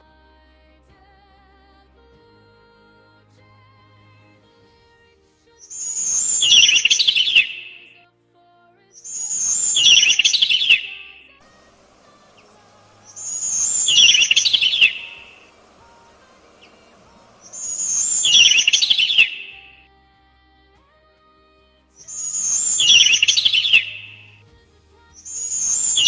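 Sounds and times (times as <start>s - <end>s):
bird singing: 5.6s - 7.9s, 9.0s - 19.8s, 22.0s - 24.4s, 25.2s - 26.0s.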